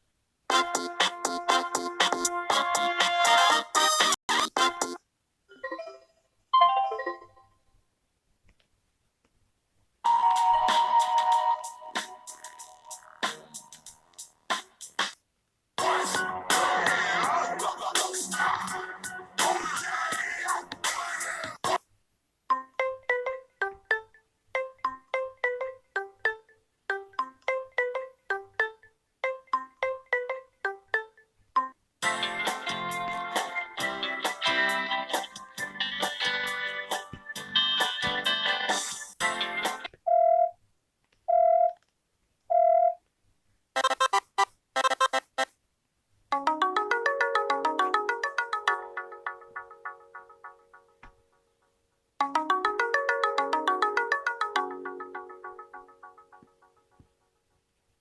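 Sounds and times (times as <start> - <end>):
phone ringtone melody: 5.5 - 7.6, 10.1 - 12.5, 22.5 - 31.8, 43.8 - 45.3, 46.4 - 51.0, 52.2 - 56.9.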